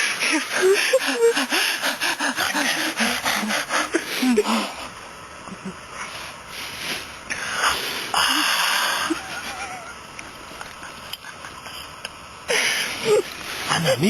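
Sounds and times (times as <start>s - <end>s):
breathy noise: 0.0s - 5.0s, 12.5s - 14.0s
person wheezing and gasping: 0.2s - 4.8s.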